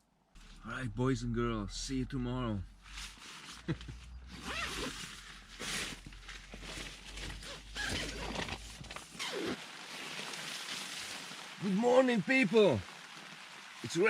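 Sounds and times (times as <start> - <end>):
tent fabric rustling: 2.8 - 14.0
tent zipper being pulled: 4.3 - 11.4.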